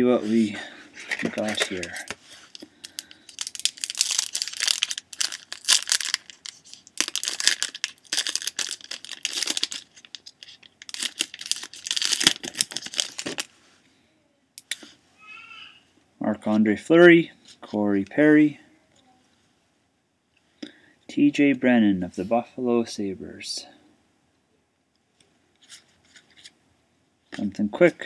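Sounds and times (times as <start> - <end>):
wrapper tearing and crinkling: 1.2 - 13.5.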